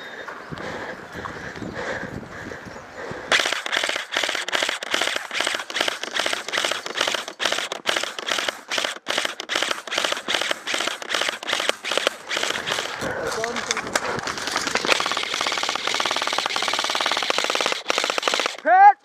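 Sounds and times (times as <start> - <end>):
airsoft gun firing full auto: 3.3 - 13.0, 14.4 - 18.6.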